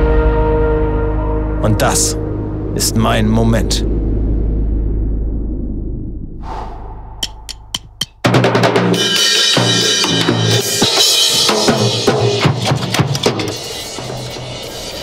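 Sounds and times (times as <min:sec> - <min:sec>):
drum kit played hard: 0:07.2 - 0:15.0.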